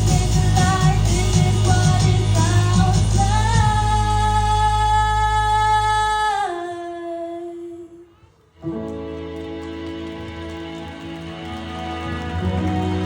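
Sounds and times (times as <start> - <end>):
backing music with bass: 0.0 - 6.5, 9.1 - 13.0.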